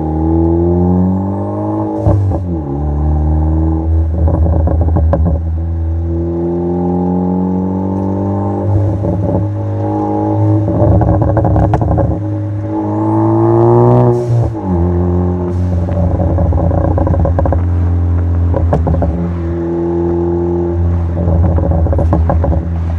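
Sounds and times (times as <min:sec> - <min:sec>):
car engine revving: 0:00.0 - 0:22.9
exhaust crackles and pops: 0:03.8 - 0:05.8, 0:07.9 - 0:22.9.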